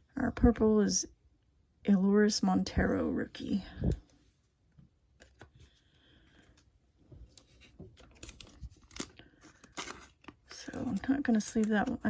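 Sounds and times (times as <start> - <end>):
trading cards being shuffled: 7.3 - 12.0.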